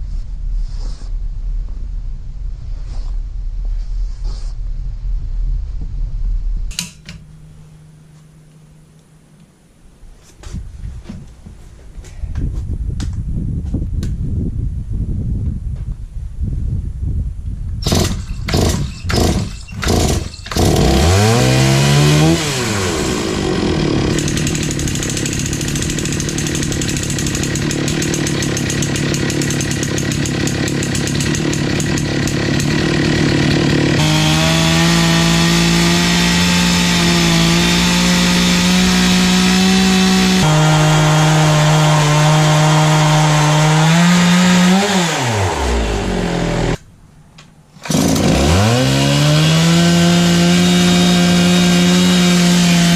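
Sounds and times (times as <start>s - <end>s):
pull starter rasps: 17.8s - 21.3s, 22.3s - 40.7s, 47.8s - 49.0s
chainsaw ripping a log: 17.8s - 46.8s, 47.8s - 52.9s.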